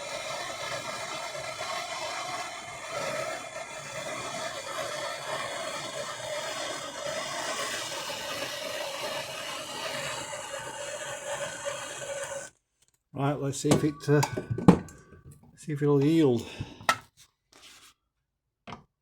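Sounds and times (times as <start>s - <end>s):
blowtorch flame hissing: 0.0s - 12.5s.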